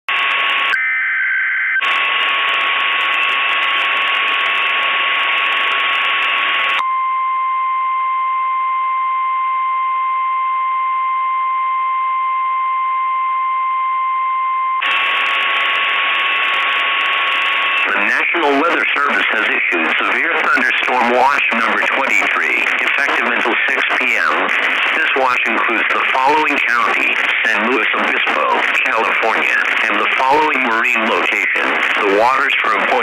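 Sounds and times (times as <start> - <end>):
radio static: 14.8 - 33.0.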